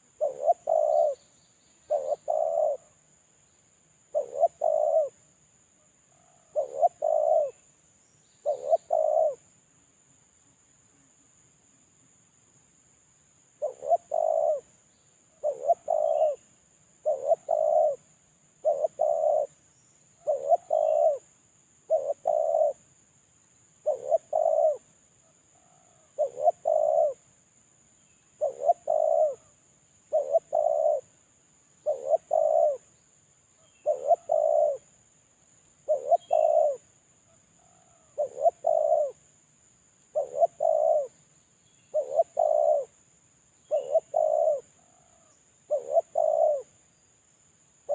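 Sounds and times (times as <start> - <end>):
dove cooing: 0.0 - 1.3, 1.9 - 3.0, 4.1 - 5.2, 6.1 - 7.7, 8.4 - 9.4, 13.6 - 14.7, 15.4 - 19.6, 20.2 - 21.3, 21.9 - 22.8, 23.8 - 24.9, 25.5 - 27.3, 28.4 - 29.5, 30.1 - 31.2, 31.8 - 32.9, 33.6 - 35.0, 35.8 - 39.2, 40.1 - 41.2, 41.9 - 43.0, 43.7 - 46.7.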